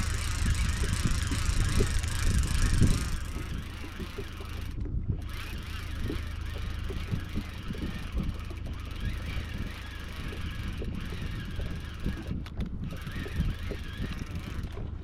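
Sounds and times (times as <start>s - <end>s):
boat motor humming: 0.0s - 15.0s
wind buffeting microphone: 0.0s - 15.0s.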